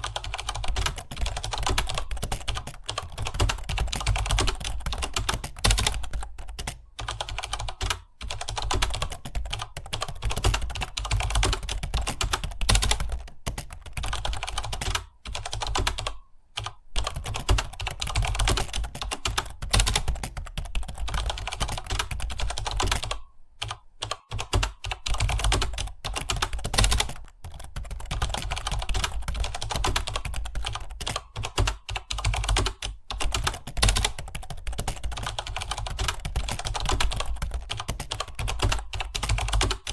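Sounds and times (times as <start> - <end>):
fast typing on keyboard: 0.0 - 39.9.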